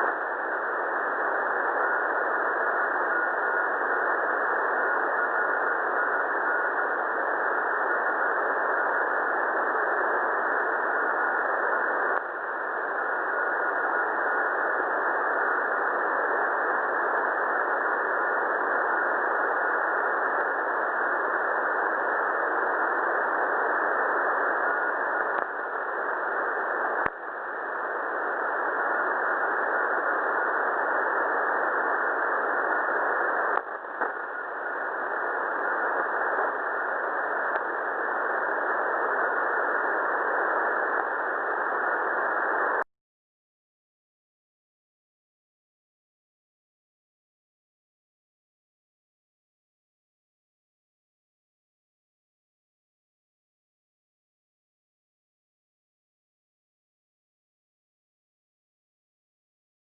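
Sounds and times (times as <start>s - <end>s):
radio static hiss: 0.0s - 42.9s
click: 12.1s - 12.3s, 25.3s - 25.6s, 27.0s - 27.2s, 33.5s - 34.2s, 37.5s - 37.7s.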